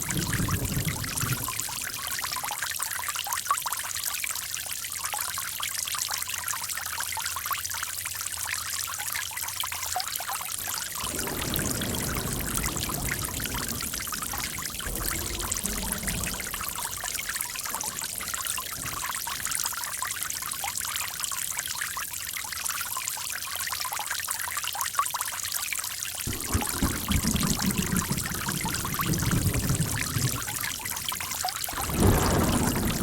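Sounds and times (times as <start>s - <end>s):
water gurgling: 0.0s - 2.7s, 10.5s - 23.0s, 26.3s - 33.0s
running water trickling: 0.0s - 33.0s.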